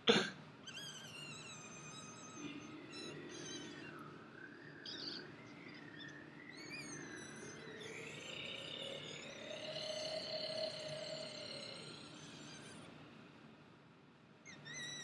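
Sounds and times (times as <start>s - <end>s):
wavering whistle-like tone: 4.7s - 13.0s.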